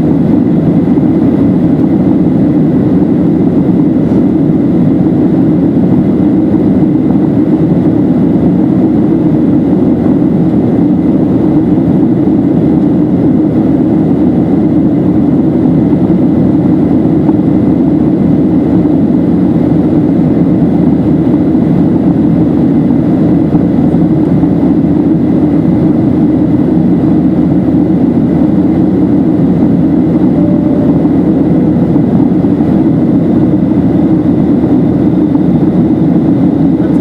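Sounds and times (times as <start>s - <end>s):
airplane cabin engine and airflow noise: 0.0s - 37.0s
faint steady high tone: 28.9s - 33.4s.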